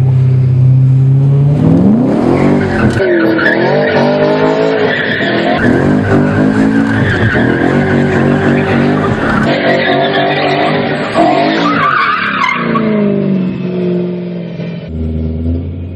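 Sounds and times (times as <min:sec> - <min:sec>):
car engine revving: 0:00.0 - 0:15.9
tyres squealing: 0:02.4 - 0:13.0.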